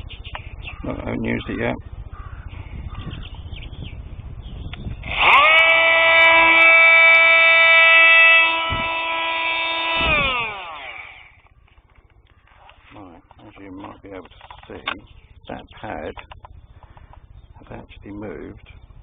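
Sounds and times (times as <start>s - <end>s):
oscillating multi-tool droning: 5.0s - 11.5s.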